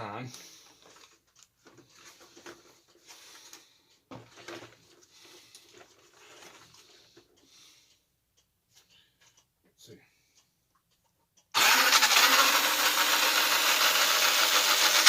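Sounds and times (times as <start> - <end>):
rustling from handling toy: 0.3 - 7.4.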